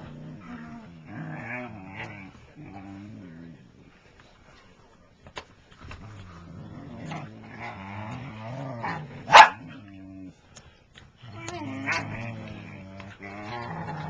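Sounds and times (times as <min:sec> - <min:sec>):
dogs grumbling: 0:00.0 - 0:04.0, 0:05.9 - 0:10.4, 0:11.2 - 0:14.0
dog barking: 0:09.3 - 0:09.6.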